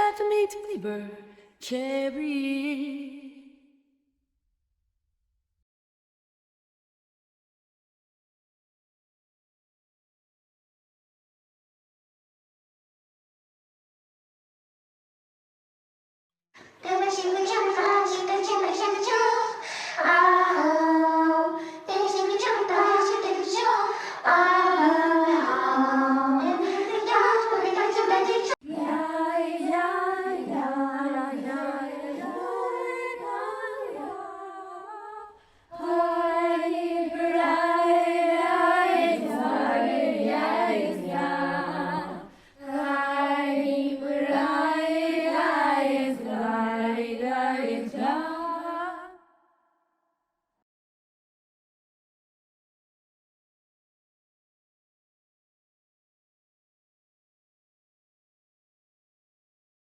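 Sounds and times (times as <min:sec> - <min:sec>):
synthetic singing voices: 0:00.0 - 0:03.6, 0:16.8 - 0:49.2.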